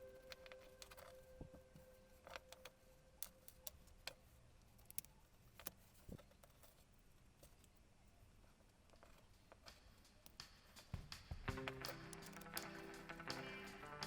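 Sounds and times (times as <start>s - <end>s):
faint steady tone: 0.0s - 9.2s
faint small clicks and taps: 0.1s - 10.9s.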